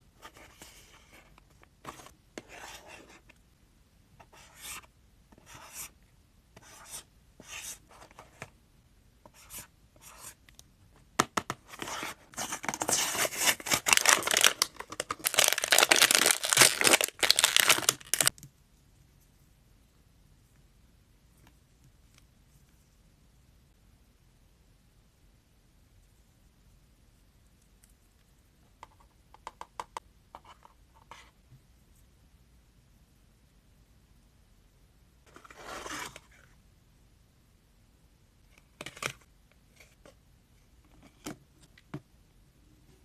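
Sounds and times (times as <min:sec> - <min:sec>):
packaging rustling: 0:11.8 - 0:18.3
packaging tearing and crinkling: 0:12.8 - 0:18.3.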